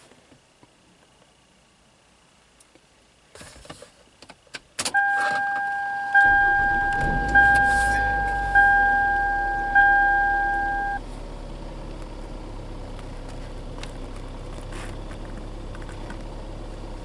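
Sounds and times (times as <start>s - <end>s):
car warning chime: 5.0s - 11.0s
low rumble: 6.1s - 11.0s.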